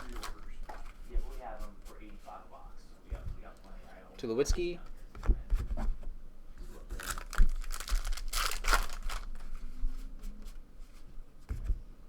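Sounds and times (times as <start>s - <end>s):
card pack wrapper tearing: 0.0s - 0.4s, 6.9s - 9.5s.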